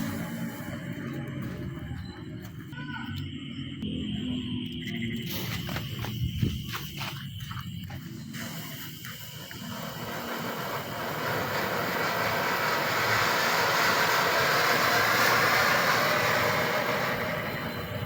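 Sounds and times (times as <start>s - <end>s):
firework hissing rush: 0.0s - 1.1s, 5.2s - 18.0s.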